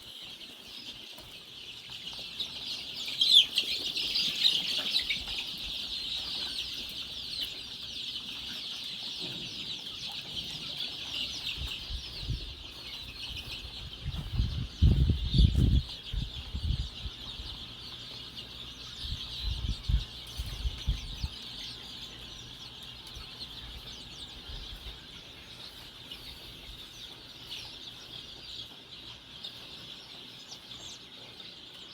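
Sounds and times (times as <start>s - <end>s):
chickens clucking: 0.0s - 31.9s
low rumbles on microphone: 11.6s - 17.7s, 18.9s - 21.4s.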